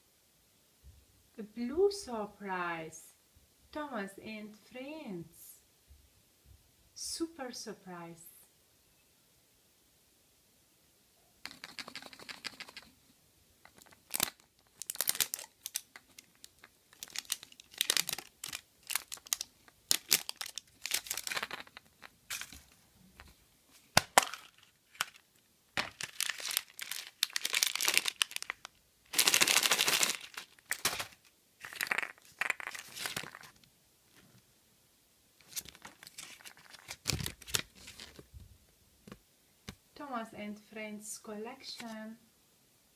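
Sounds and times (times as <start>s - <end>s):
foil and plastic wrapping tearing: 13.8s - 22.4s, 25.8s - 33.5s.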